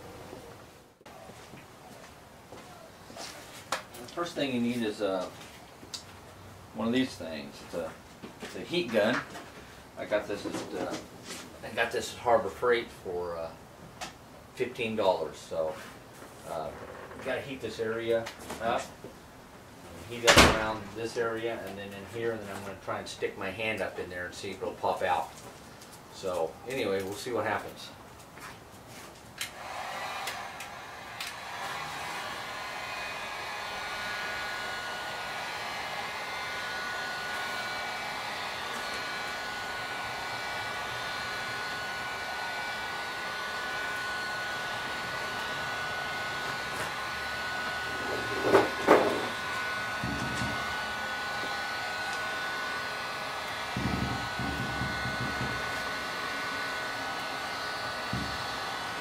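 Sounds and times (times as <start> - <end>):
heat gun blowing: 29.4 - 59.0.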